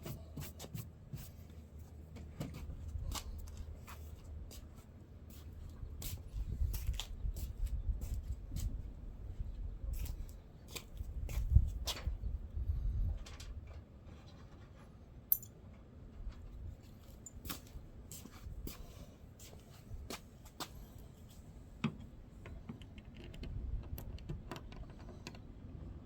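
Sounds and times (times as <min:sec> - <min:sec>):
tools clicking and scraping: 0:15.3 - 0:15.6.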